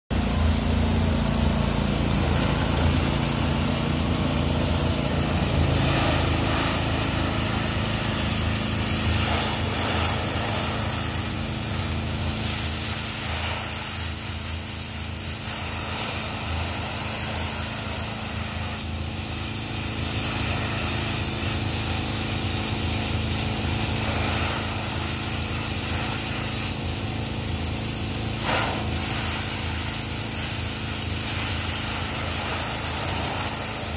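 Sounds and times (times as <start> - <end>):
high-pressure water spray hiss: 0.1 - 33.9
pressure washer engine running: 0.1 - 33.9.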